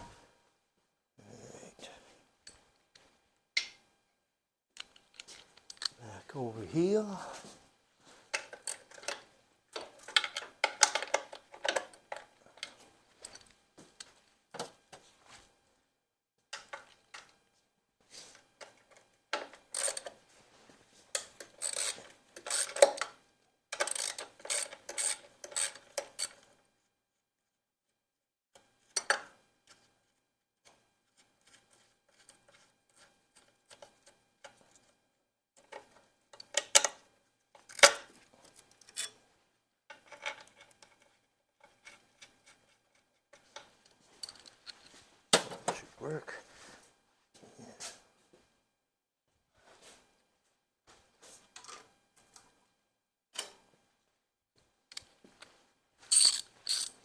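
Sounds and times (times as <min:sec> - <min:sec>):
metal tools clinking: 0:56.1 - 0:57.0.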